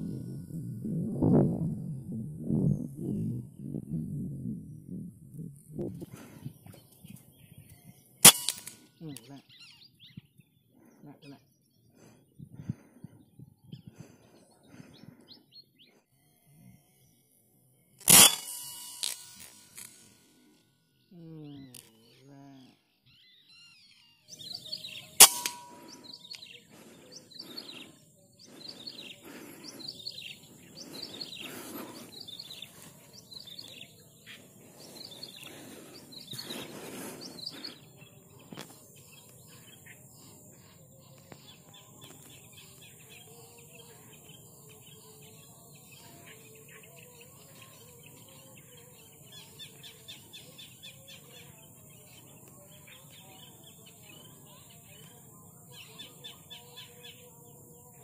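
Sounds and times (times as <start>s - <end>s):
faint high bird chirping: 0.0s - 5.5s, 6.2s - 18.0s, 18.7s - 58.0s
sharp crack: 8.2s - 8.9s, 18.0s - 20.3s, 25.2s - 27.9s.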